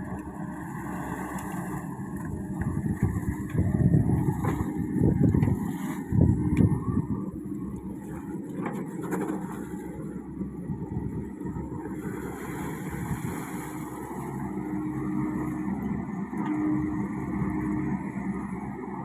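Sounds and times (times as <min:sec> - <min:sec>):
excavator diesel engine running: 0:00.0 - 0:01.0, 0:01.6 - 0:13.1, 0:13.8 - 0:19.0.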